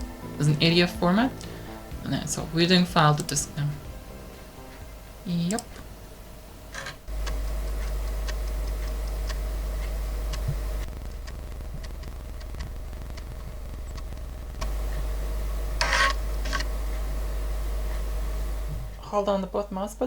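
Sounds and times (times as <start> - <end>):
low mains hum: 0.0 - 20.0
floppy drive head clicking: 6.7 - 18.7.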